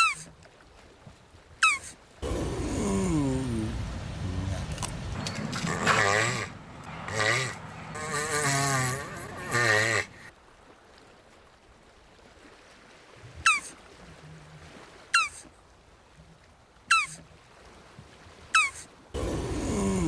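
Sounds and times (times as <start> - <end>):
tortoise calling: 0.0 - 0.3, 1.6 - 10.3, 13.4 - 13.8, 15.1 - 15.5, 16.9 - 17.2, 18.6 - 20.0.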